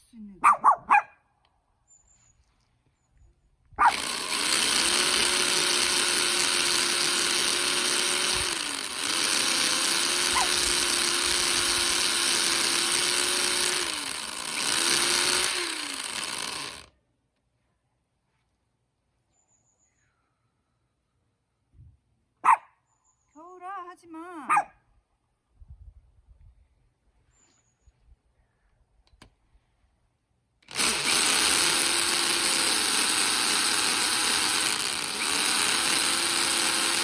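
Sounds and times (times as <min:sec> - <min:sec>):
electric drill boring into wood: 0:03.8 - 0:16.9, 0:30.6 - 0:37.0.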